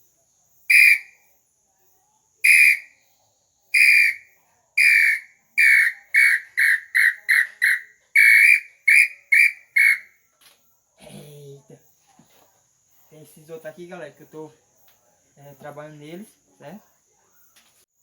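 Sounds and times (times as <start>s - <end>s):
bird-call whistle notes: 0.7s - 1.2s, 2.4s - 3.0s, 3.7s - 10.2s.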